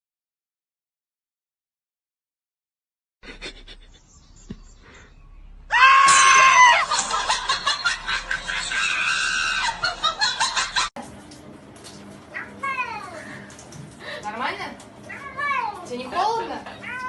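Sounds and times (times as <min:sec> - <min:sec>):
person screaming: 0:05.7 - 0:06.8.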